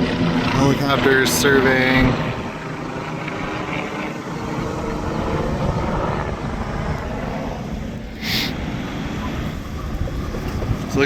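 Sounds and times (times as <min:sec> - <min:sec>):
helicopter flying overhead: 0:00.0 - 0:11.0
brief hiss: 0:08.2 - 0:08.6.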